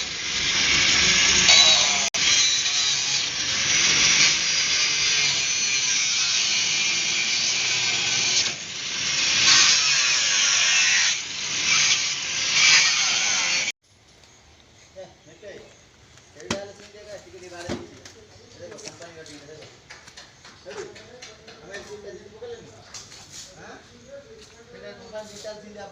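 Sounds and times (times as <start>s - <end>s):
power tool cutting sheet steel: 0.0s - 13.7s.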